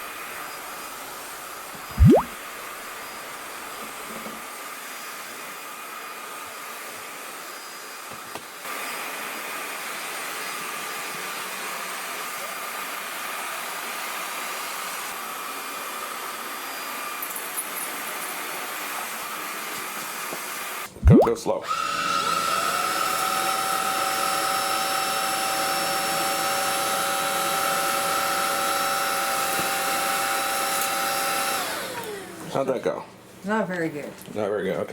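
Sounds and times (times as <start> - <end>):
stick vacuum running: 21.6 - 32.5.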